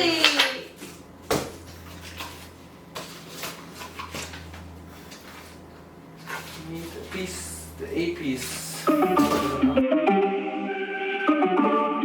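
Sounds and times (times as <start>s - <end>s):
desk parts clicking and rustling: 0.8s - 7.6s.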